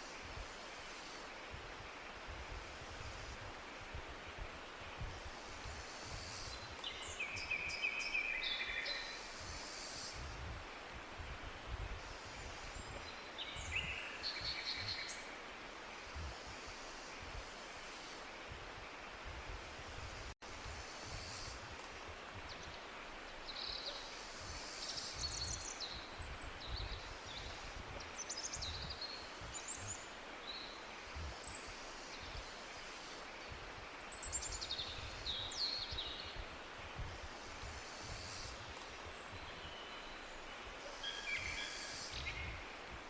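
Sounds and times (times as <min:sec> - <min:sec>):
tropical birds chirping and trilling: 0:04.3 - 0:10.4, 0:12.0 - 0:18.2, 0:22.4 - 0:36.5, 0:37.8 - 0:42.8.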